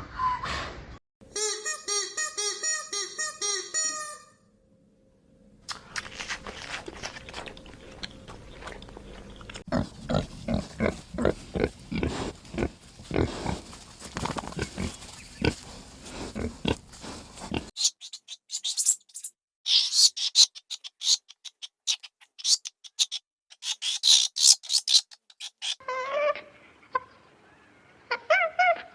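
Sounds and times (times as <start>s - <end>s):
pigs crunching food: 5.7s - 17.8s
pigs grunting: 8.7s - 17.7s.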